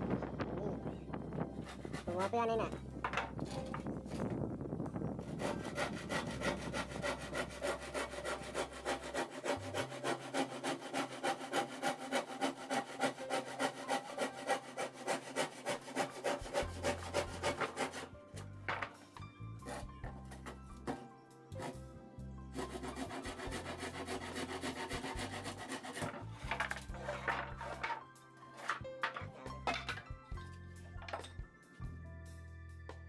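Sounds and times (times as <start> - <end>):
hand saw cutting wood: 1.6 - 2.6, 5.2 - 18.1, 19.6 - 21.0, 21.6 - 21.8, 22.5 - 28.0, 28.6 - 29.5.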